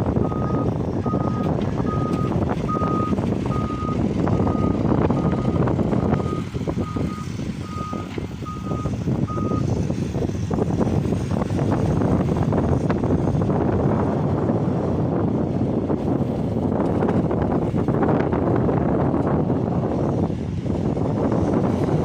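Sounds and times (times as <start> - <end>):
diesel engine running: 0.0 - 22.0
reversing alarm beeping: 0.2 - 9.7.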